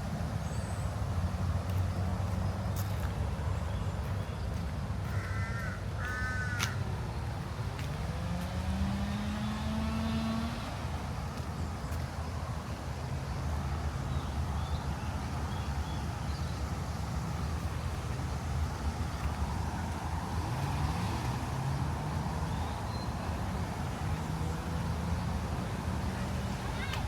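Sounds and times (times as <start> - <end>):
vehicle engines rumbling: 0.0 - 27.0
engine rising in pitch: 8.0 - 11.2.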